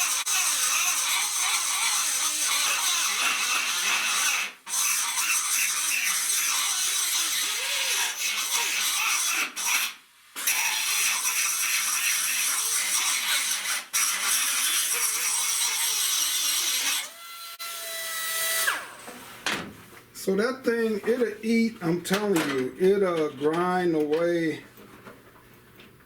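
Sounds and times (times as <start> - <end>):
die grinder whine and grinding: 10.4 - 19.4.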